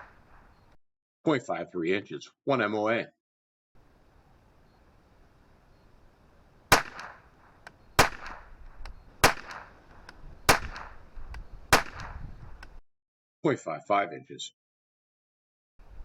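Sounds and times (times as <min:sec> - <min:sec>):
rifle shots: 0:06.7 - 0:12.7
faint clicks: 0:07.0 - 0:10.2, 0:10.8 - 0:12.8.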